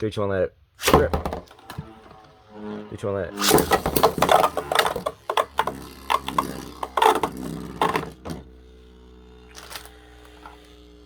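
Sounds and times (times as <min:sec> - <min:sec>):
spinning tops clashing: 0:03.4 - 0:08.5.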